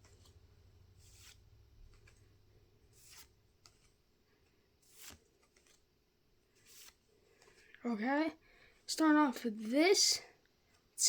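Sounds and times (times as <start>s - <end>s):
trading cards sliding swish: 1.0s - 2.3s, 2.9s - 4.0s, 4.8s - 5.8s, 6.6s - 7.6s.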